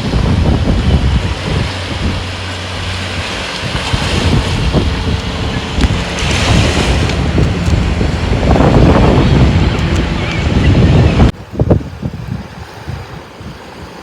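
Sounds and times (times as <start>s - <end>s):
sea waves washing: 0.0s - 14.0s
wind buffeting microphone: 0.0s - 14.0s.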